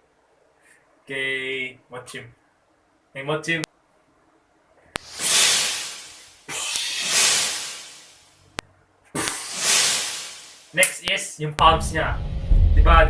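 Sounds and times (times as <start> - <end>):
hissing air whooshes: 5.0 - 8.4, 9.2 - 10.8.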